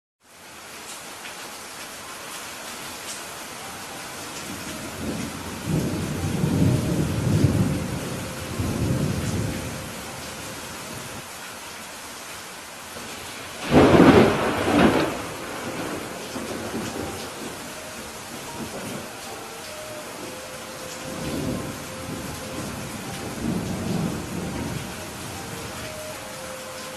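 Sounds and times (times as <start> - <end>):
steady rain: 0.2 - 26.9
rolling thunder: 4.9 - 10.0, 13.6 - 19.2, 21.0 - 25.8
sharp thunderclap: 13.6 - 17.5.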